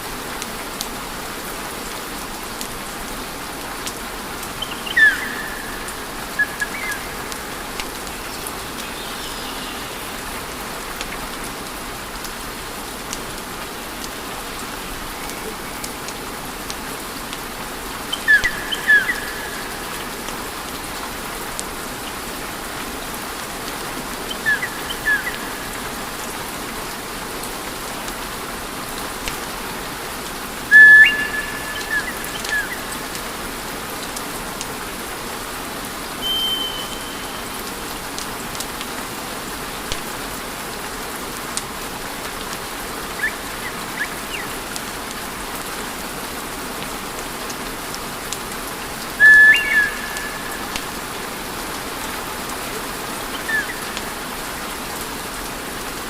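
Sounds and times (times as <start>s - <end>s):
high whistling squeaks: 36.2s - 37.4s.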